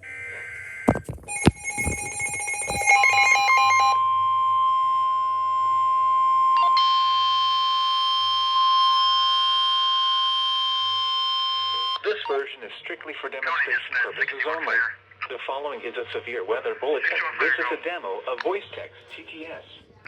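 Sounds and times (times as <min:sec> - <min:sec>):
rapid electronic beeps: 0:00.8 - 0:04.0
steady electronic alert tone: 0:01.3 - 0:04.5.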